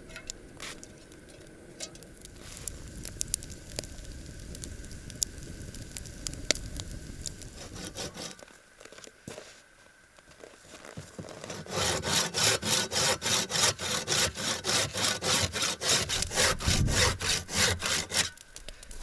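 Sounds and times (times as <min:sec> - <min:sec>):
hand saw cutting wood: 0:07.6 - 0:08.4, 0:11.2 - 0:18.4.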